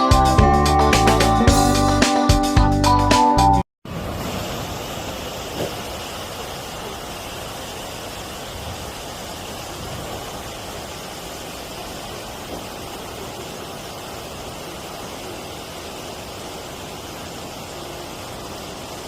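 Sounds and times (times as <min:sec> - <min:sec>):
music: 0:00.0 - 0:03.6.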